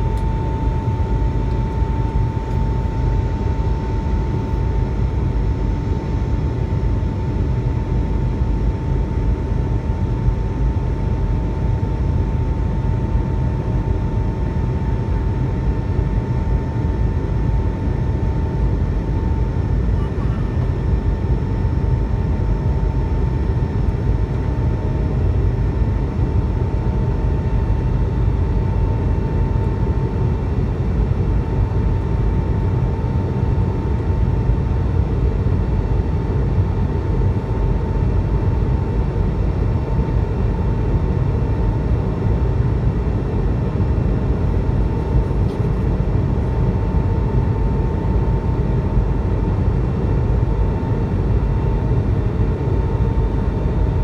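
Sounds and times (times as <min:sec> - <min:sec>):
thin steady whine: 0:00.0 - 0:07.9
jet engine rumble in cabin: 0:00.0 - 0:54.0.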